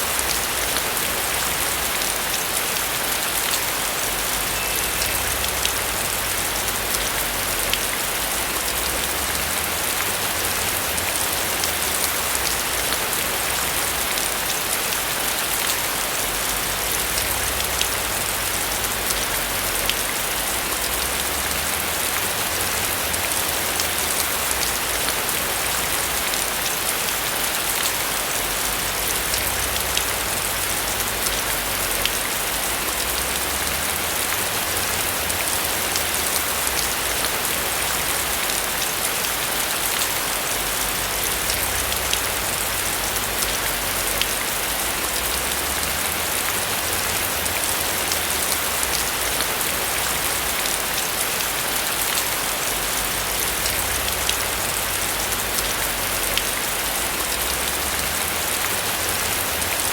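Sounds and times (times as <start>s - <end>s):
rain hissing on a roof: 0.0s - 59.9s
rain drop ticks: 39.9s - 51.4s, 52.0s - 59.9s.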